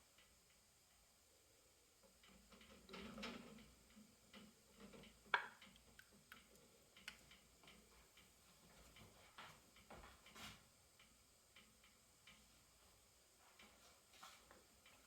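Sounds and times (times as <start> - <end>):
faint clicks and light taps: 2.0 - 15.0.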